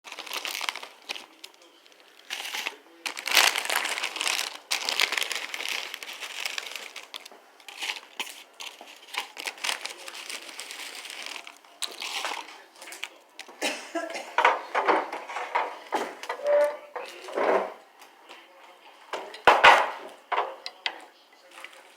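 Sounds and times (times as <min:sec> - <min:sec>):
food packaging crinkling: 0:00.1 - 0:13.6.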